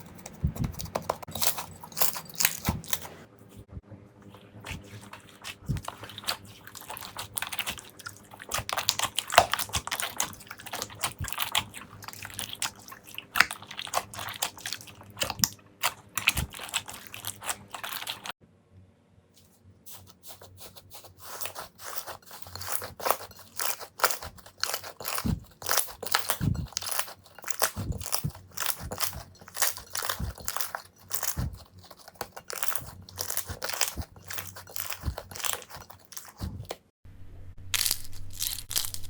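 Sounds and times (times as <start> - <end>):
slime crackling and popping: 4.8 - 18.3, 21.4 - 36.8, 37.7 - 39.0.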